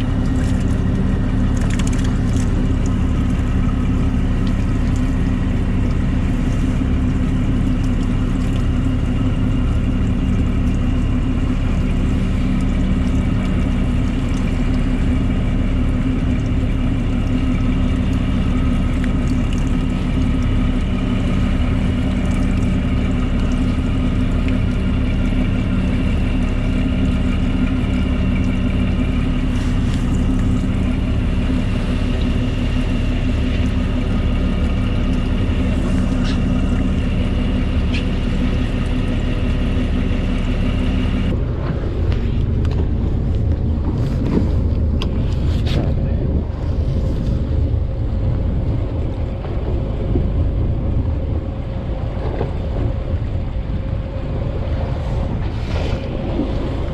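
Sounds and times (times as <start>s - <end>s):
boat engine droning: 0.0s - 56.9s.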